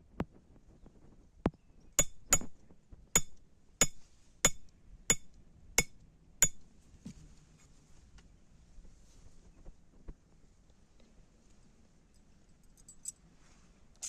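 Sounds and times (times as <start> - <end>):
hammer striking iron on anvil: 2.0 - 2.5, 3.2 - 6.6.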